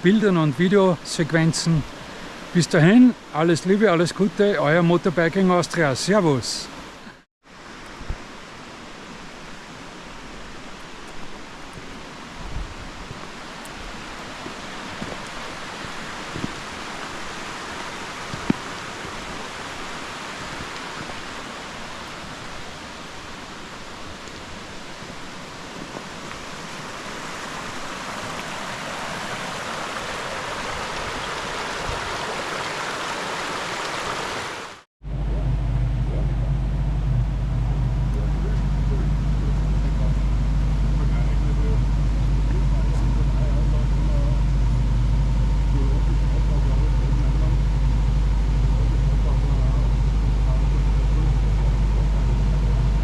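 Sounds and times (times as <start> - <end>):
stream rushing over rocks: 0.0 - 34.9.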